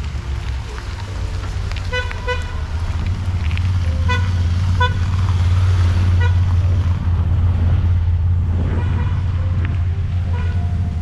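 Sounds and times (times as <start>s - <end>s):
vehicle engine rumbling: 0.0s - 11.0s.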